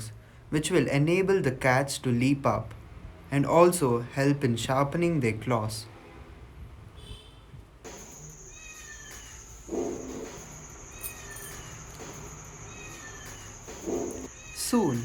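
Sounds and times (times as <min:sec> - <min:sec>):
high insect drone: 0:07.9 - 0:15.0
cat meowing: 0:08.4 - 0:10.2, 0:12.7 - 0:15.0.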